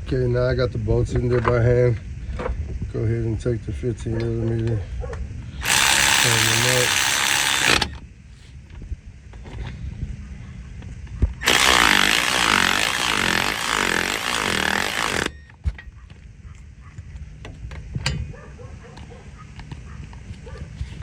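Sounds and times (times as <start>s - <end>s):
power ratchet running: 5.6s - 8.0s, 11.4s - 15.4s.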